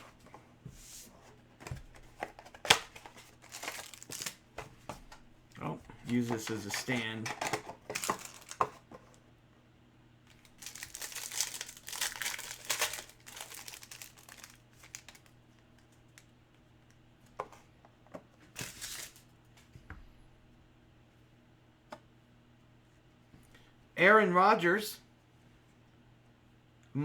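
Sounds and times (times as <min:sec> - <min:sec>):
wrapper crinkling and tearing: 0:02.6 - 0:04.4, 0:06.1 - 0:08.8, 0:10.3 - 0:15.3, 0:18.6 - 0:19.3.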